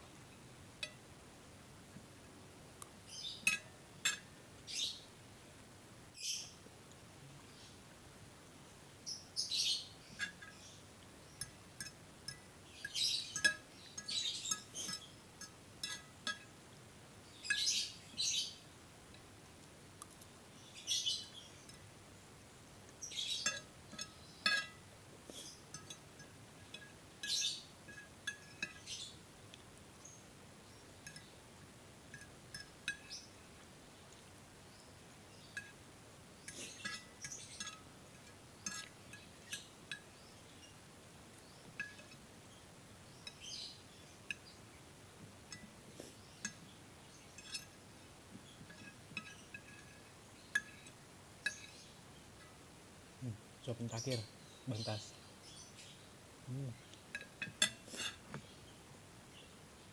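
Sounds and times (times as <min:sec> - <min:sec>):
utensil clinking on plate: 0:03.4 - 0:04.4, 0:11.4 - 0:16.5, 0:23.1 - 0:24.9, 0:25.7 - 0:29.1, 0:32.1 - 0:33.3, 0:36.4 - 0:40.1, 0:41.8 - 0:42.2, 0:47.4 - 0:47.8, 0:48.6 - 0:52.5, 0:57.1 - 0:58.2.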